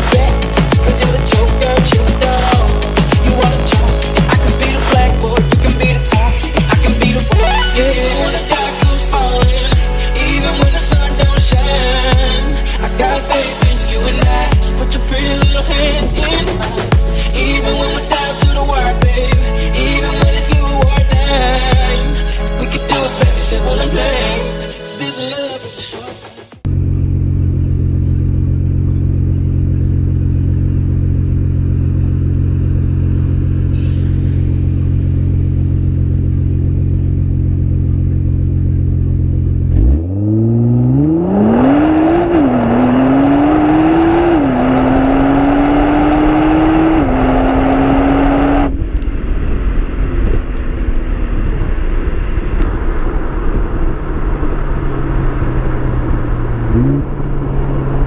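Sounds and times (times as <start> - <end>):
car engine idling and accelerating: 0.0 - 24.8, 26.5 - 58.0.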